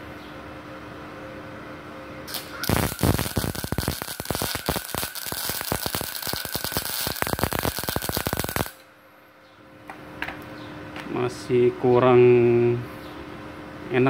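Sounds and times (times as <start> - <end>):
welder crackling: 2.3 - 8.9.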